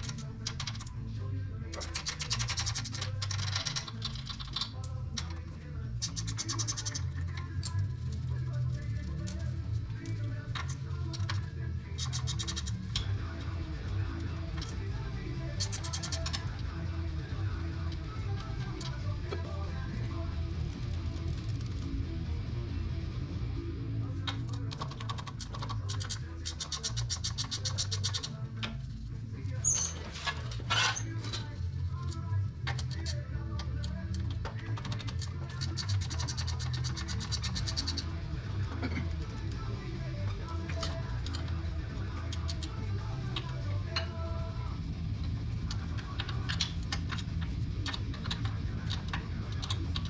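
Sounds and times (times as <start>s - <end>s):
background music: 0.0s - 50.0s
steady low hum: 0.0s - 50.0s
metal scrapes: 29.6s - 31.4s.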